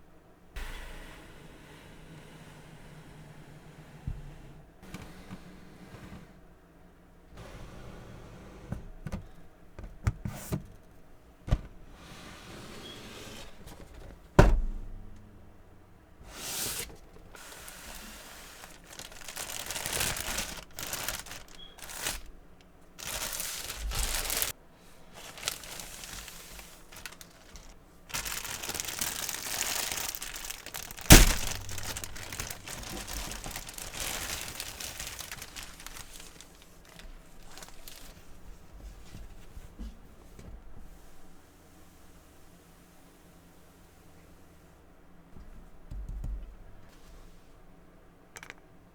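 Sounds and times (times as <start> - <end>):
cardboard and plastic crinkling: 16.5 - 39.6.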